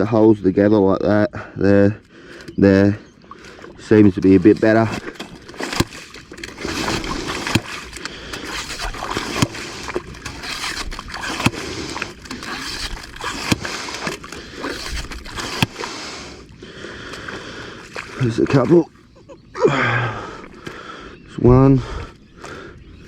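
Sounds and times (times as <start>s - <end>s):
sand and water sloshing: 1.6s - 23.0s
pump sharp knocks: 4.4s - 16.1s.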